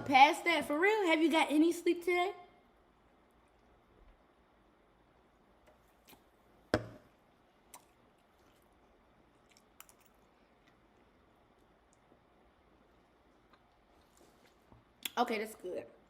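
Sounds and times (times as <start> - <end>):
mouth clicks and smacks eating: 7.7 - 10.9.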